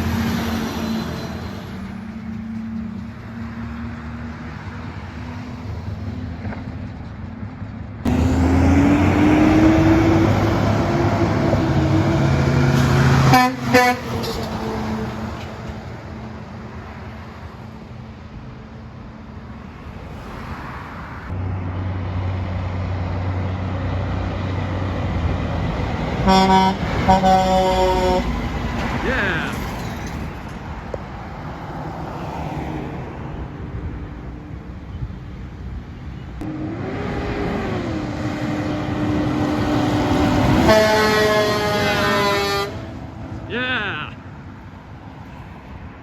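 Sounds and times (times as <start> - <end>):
truck diesel engines passing: 0.0 - 46.0
truck horn blast: 12.6 - 14.8, 26.2 - 28.4, 40.5 - 44.1.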